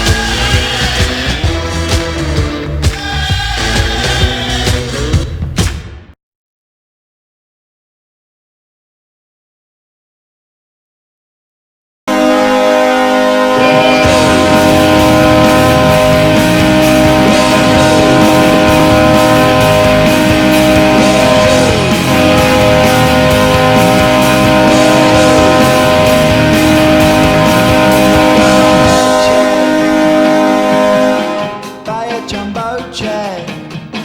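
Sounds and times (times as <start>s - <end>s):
hard rock song with electric guitar: 0.0s - 5.6s, 13.5s - 34.0s
goal horn blowing a chord: 12.1s - 32.1s.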